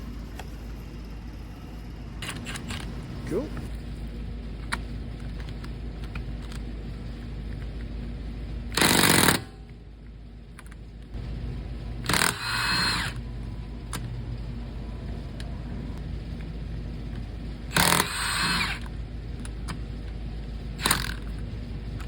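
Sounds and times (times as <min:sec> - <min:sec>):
impact wrench bursts: 0:08.7 - 0:09.6, 0:12.0 - 0:13.4, 0:17.7 - 0:18.9, 0:20.8 - 0:21.4.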